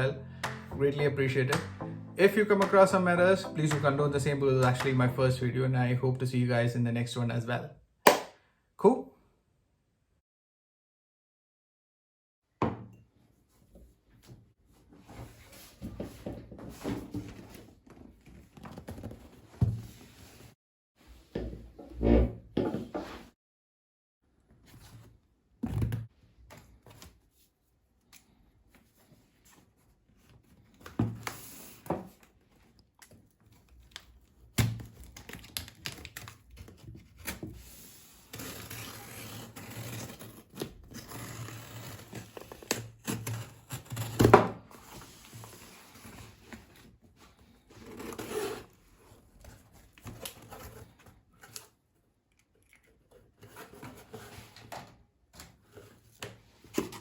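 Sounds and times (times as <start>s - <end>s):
packaging crinkling and tearing: 33.1s - 37.2s.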